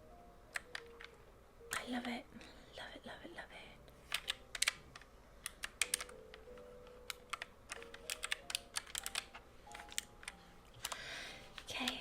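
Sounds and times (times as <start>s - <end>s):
mechanical keyboard key clicks: 4.1s - 6.4s, 7.0s - 11.0s.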